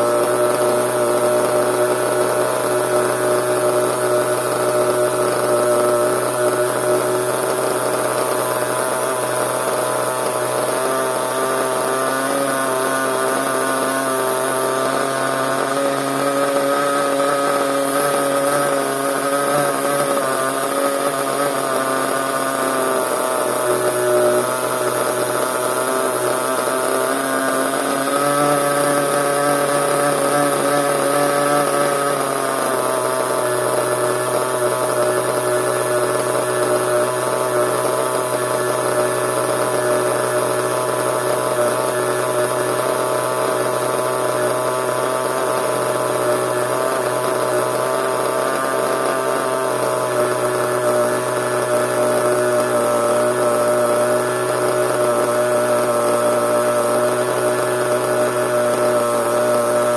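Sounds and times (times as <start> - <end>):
small nitro engine running: 0.0 - 59.9.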